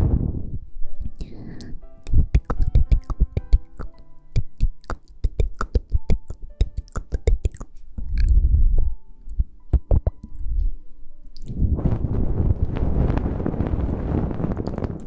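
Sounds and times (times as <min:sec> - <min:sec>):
low rumbling rustle: 0:00.0 - 0:01.0, 0:10.4 - 0:15.0
soft background music: 0:00.1 - 0:15.0.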